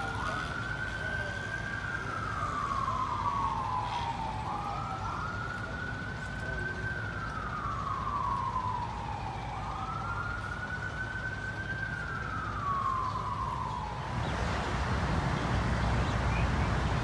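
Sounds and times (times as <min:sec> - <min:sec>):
siren wailing: 0:00.0 - 0:17.0.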